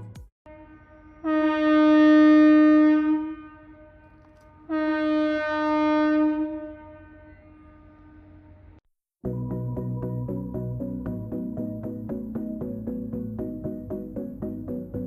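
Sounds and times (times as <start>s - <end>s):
low submarine horn blasts: 0.5s - 8.5s.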